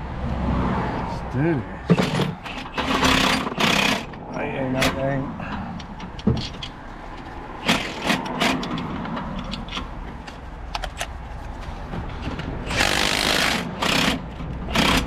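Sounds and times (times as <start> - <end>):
cordless impact gun: 2.6 - 4.1, 12.7 - 15.0.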